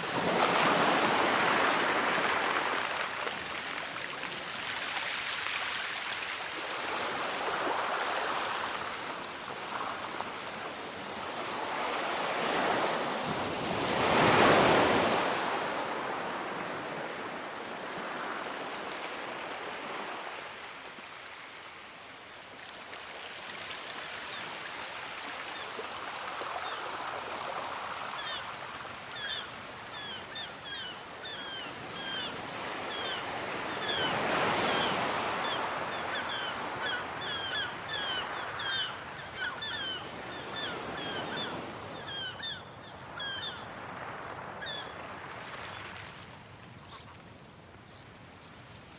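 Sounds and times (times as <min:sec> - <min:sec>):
waves washing on shore: 0:00.0 - 0:29.0.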